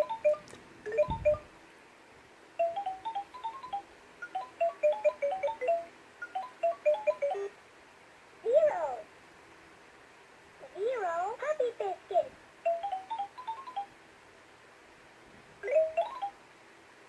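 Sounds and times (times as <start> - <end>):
toy phone electronic tune: 0.0 - 1.4, 2.6 - 7.5, 12.6 - 13.9, 15.6 - 16.4.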